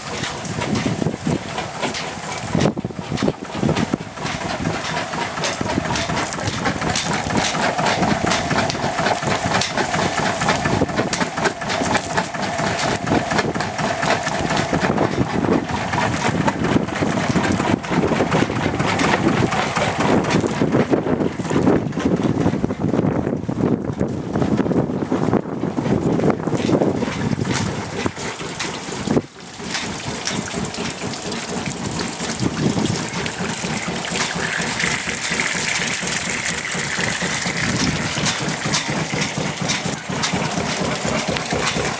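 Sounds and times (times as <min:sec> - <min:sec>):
diesel engine running: 0:00.0 - 0:41.9.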